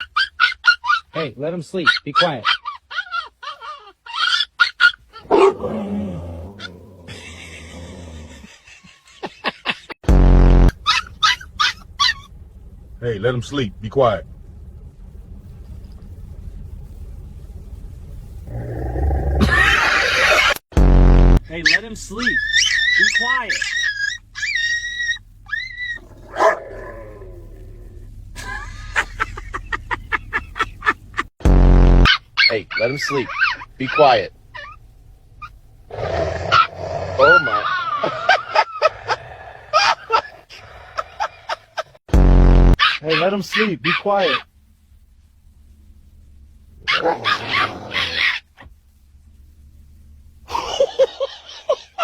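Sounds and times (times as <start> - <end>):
puppy yipping: 0.0 - 1.2, 1.8 - 5.3, 10.8 - 12.3, 21.6 - 26.6, 42.8 - 44.4
puppy growling call: 2.6 - 8.6, 18.5 - 20.6, 22.4 - 28.1, 35.4 - 38.1
loud low buzz: 10.0 - 10.9, 11.9 - 21.6, 25.2 - 32.1, 42.1 - 42.8.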